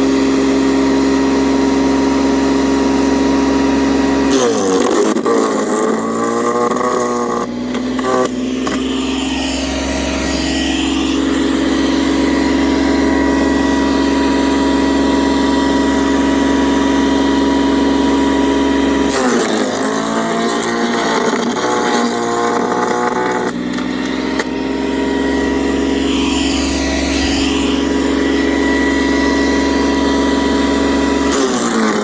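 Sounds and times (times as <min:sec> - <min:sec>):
wood chipper humming: 0:00.0 - 0:32.0
branch being chipped: 0:19.0 - 0:24.6.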